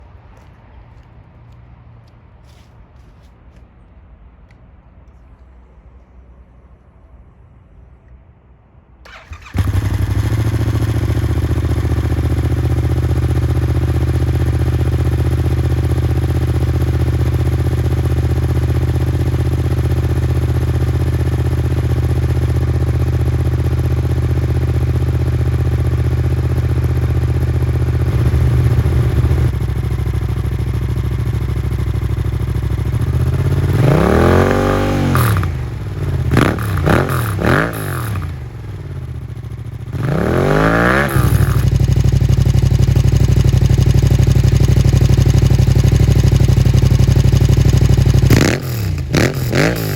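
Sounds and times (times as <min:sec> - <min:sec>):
motorcycle engine idling and revving: 0:09.1 - 0:49.9.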